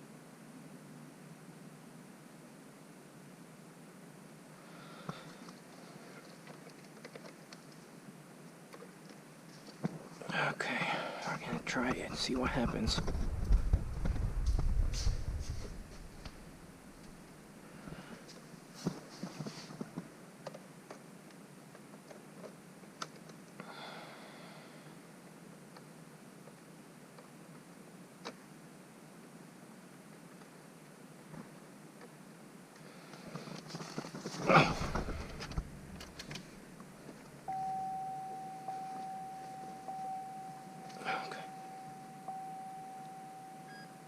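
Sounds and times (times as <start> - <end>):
soft hiss: 0.0 - 44.0
steady electronic beep: 37.5 - 44.0.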